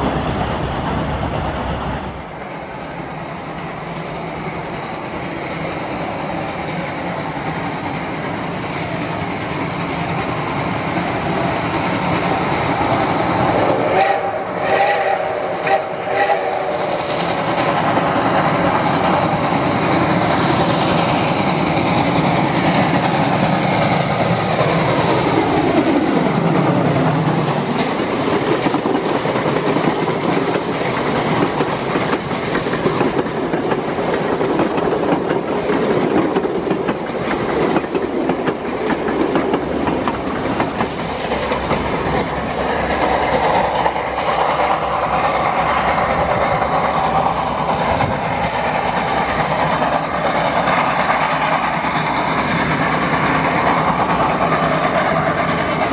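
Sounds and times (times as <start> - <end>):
steam locomotive running: 0.0 - 55.9
wheels clicking over rail joints: 17.1 - 46.8.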